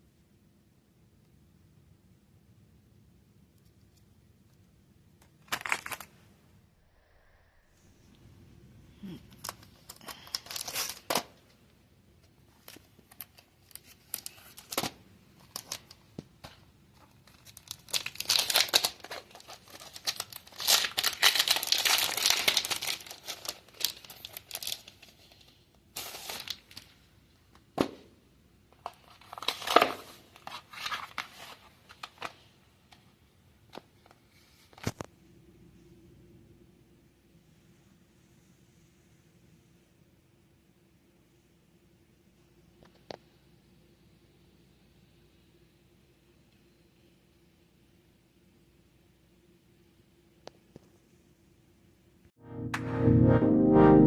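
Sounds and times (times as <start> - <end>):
packaging crinkling and tearing: 5.3 - 6.1, 9.3 - 11.4, 12.6 - 27.0, 28.8 - 32.5
packaging rustling: 5.4 - 6.1, 9.4 - 11.5, 12.6 - 27.0, 28.8 - 32.5.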